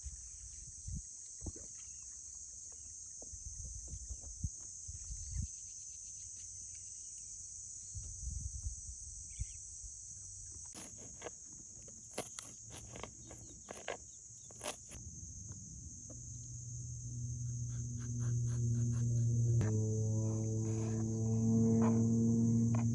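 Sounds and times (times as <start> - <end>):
insects chirring: 0.0 - 22.9
low hum: 14.5 - 22.9.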